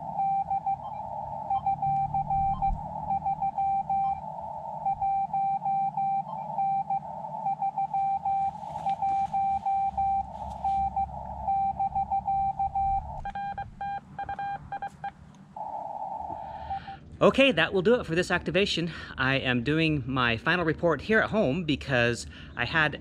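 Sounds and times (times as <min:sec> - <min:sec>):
higher tone: 0:00.0 - 0:13.8
morse code tone: 0:00.0 - 0:15.7
receiver hiss: 0:00.0 - 0:19.0.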